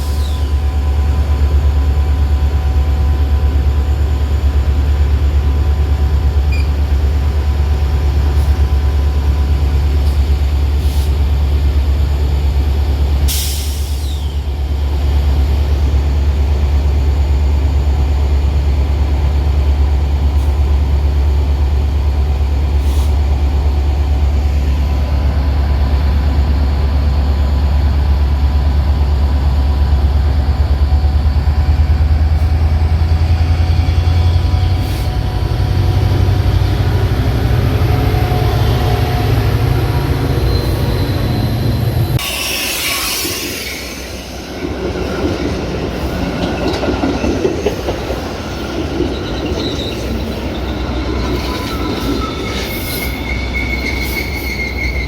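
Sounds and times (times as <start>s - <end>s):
train drone: 0.0s - 55.0s.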